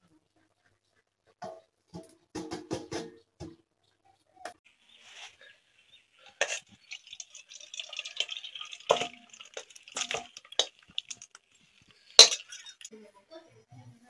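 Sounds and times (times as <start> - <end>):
utensil scraping in cooking pot: 4.9 - 12.9.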